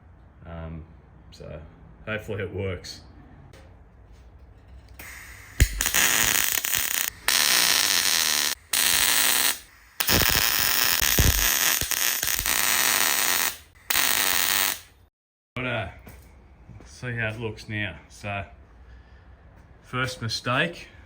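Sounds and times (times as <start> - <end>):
welding arc crackling: 5.0 - 15.0.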